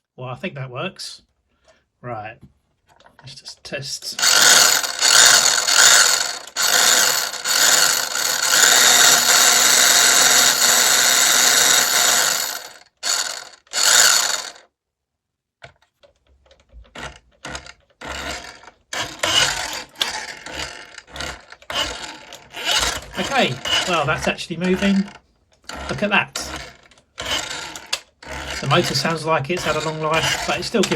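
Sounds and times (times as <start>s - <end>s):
toy car motor whirring: 4.0s - 14.7s, 16.8s - 30.9s
faint clicks and bumps: 15.6s - 30.9s.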